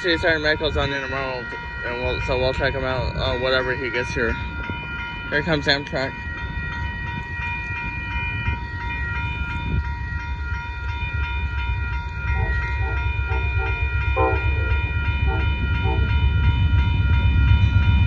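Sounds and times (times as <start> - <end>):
crossing bell ringing: 0.0 - 18.0
passenger train rumbling: 0.0 - 18.0
locomotive horn toots: 12.3 - 16.5.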